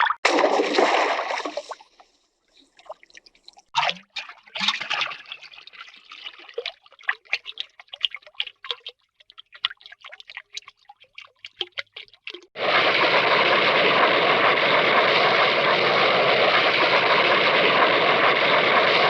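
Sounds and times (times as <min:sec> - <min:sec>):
water splash: 0:00.0 - 0:03.1, 0:03.7 - 0:14.4
water dripping and plopping: 0:00.0 - 0:12.6.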